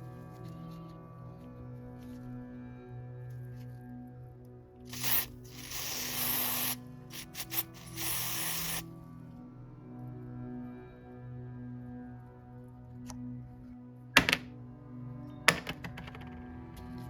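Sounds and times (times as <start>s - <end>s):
background music: 0.0s - 17.0s
hissing spray bursts: 4.9s - 8.8s.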